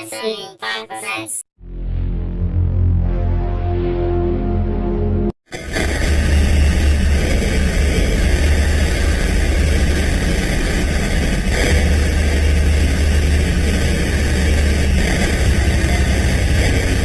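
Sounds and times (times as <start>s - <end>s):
low drone: 1.6s - 17.0s
harsh distorted digital noise: 5.5s - 17.0s.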